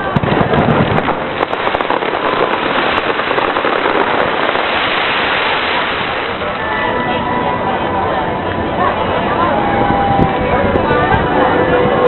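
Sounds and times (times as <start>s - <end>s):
sharp fireworks pops: 0.0s - 6.4s
fireworks crackling: 0.0s - 6.7s.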